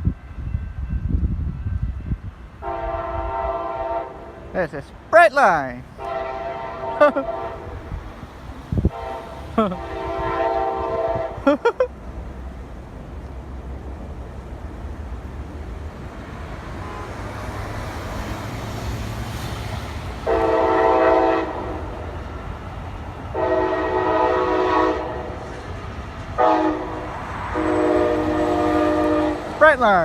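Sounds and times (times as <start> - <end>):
train rumble: 0.0 - 30.0
train air horn blasts: 2.6 - 4.5, 6.0 - 7.9, 8.8 - 11.5, 16.8 - 17.3, 20.2 - 22.0, 23.3 - 25.5, 26.4 - 29.6.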